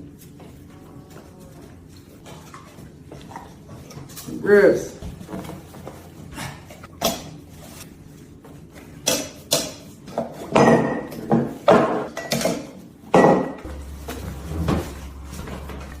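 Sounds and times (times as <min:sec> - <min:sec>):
dishes and pans clattering: 0:09.0 - 0:16.0.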